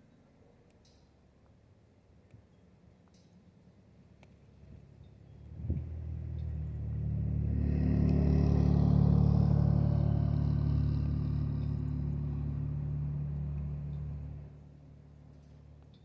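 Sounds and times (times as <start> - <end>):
vehicle engine running: 5.4 - 14.7.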